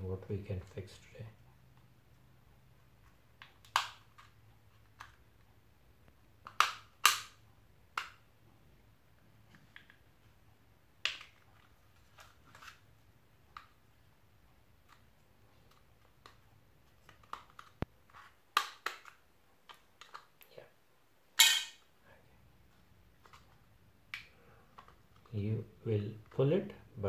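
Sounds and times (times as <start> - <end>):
plastic clips clicking and snapping: 6.4 - 8.2, 18.5 - 20.4.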